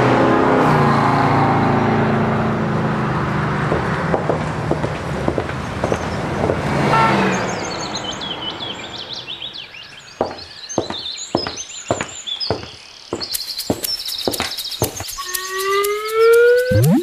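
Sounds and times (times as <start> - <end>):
car traffic noise: 0.0 - 13.4
birds chirping: 4.7 - 17.0
sharp taps: 10.2 - 17.0.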